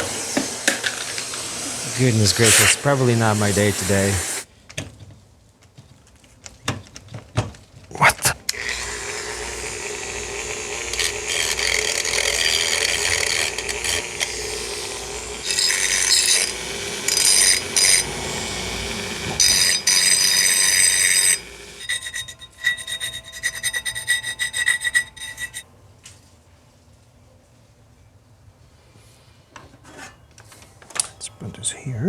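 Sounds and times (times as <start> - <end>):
electric drill grinding metal: 0.0 - 4.4, 8.5 - 25.6
high squealing: 15.4 - 25.6.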